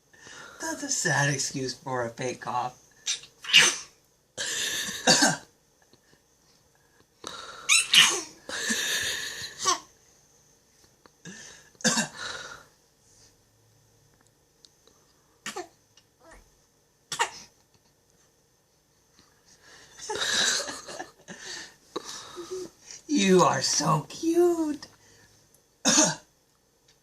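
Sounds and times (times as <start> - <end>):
baby fake coughing: 3.4 - 3.9, 5.0 - 5.5, 7.7 - 8.3, 11.8 - 12.2, 15.4 - 15.8, 17.1 - 17.5, 25.9 - 26.3.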